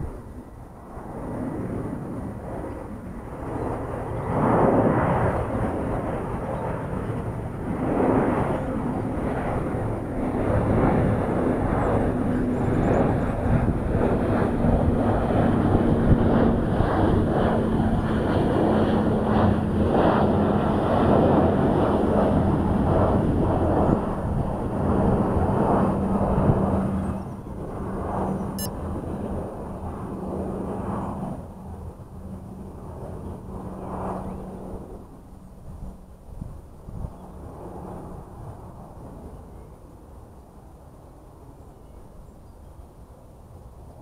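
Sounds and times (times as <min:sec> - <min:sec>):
wind buffeting microphone: 0:00.0 - 0:35.0
quadcopter propellers humming: 0:00.0 - 0:36.0.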